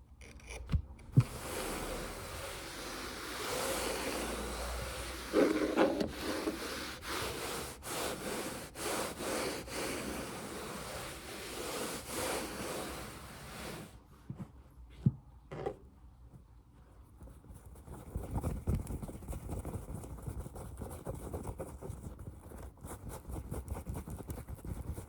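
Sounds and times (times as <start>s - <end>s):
hands rubbing near microphone: 1.2s - 13.9s.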